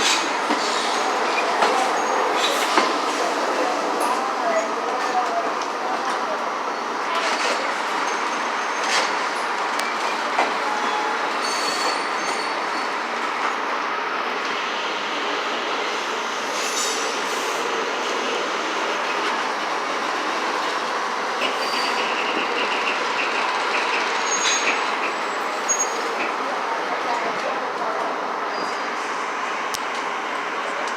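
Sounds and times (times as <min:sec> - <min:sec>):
train wheels rumbling on rail: 0:00.0 - 0:30.9
wheel squeals: 0:10.7 - 0:12.9, 0:21.4 - 0:26.3.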